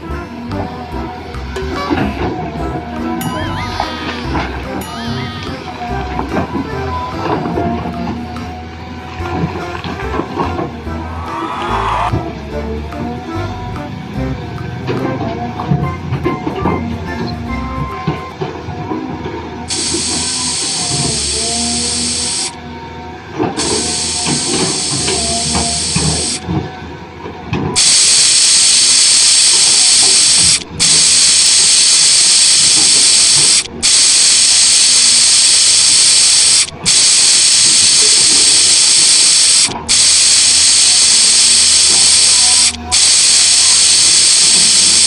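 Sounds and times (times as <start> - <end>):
loud steady hiss: 19.7 - 22.6, 23.6 - 26.4, 27.8 - 45.0.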